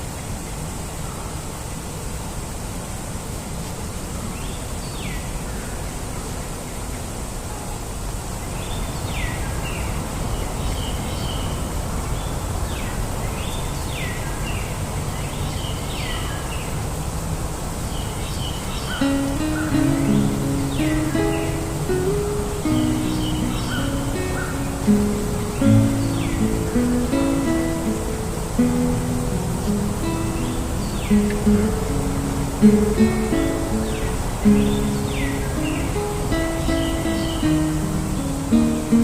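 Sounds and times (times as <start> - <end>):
birds calling: 18.0 - 39.0
acoustic guitar music: 19.0 - 39.0.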